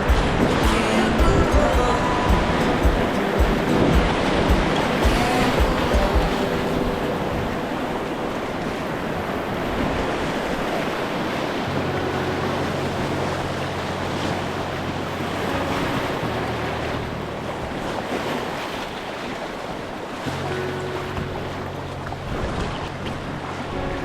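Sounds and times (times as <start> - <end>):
low held notes: 0.0 - 10.3, 11.5 - 18.6
river water rushing: 0.0 - 24.0
wind buffeting microphone: 0.0 - 24.0.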